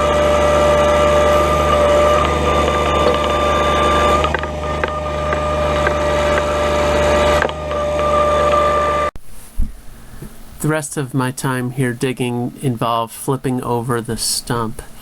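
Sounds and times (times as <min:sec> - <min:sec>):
tractor diesel engine running: 0:00.0 - 0:09.1
steady whine: 0:00.0 - 0:12.8.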